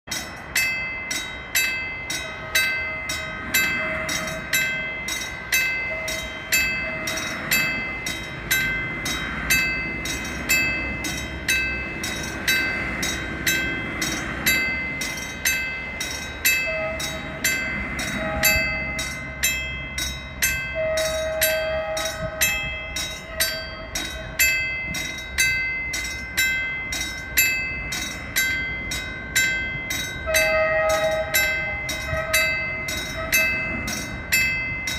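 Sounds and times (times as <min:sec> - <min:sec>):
steady high tone: 0:00.1 - 0:34.9
train wheels clacking over rail joints: 0:00.1 - 0:34.9
locomotive horn notes: 0:02.3 - 0:04.5, 0:16.6 - 0:19.3, 0:20.7 - 0:24.4, 0:30.2 - 0:34.0.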